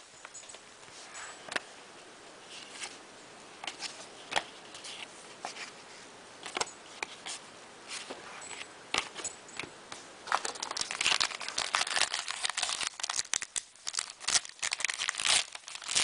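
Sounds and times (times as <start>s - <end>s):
faint steady hiss: 0.0s - 16.0s
cards clicking and rustling: 3.6s - 5.8s, 6.4s - 16.0s.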